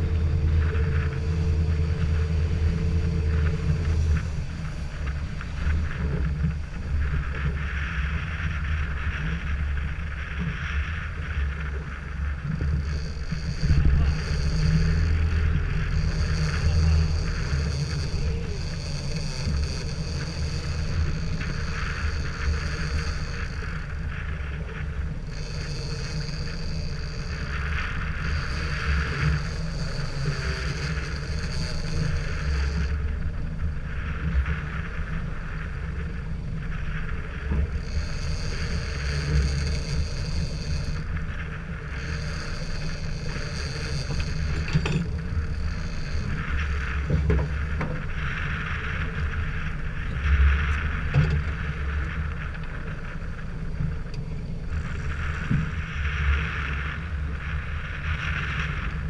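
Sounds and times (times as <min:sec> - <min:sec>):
boat engine hum: 0:00.0 - 0:59.0
wind on microphone: 0:00.0 - 0:59.0.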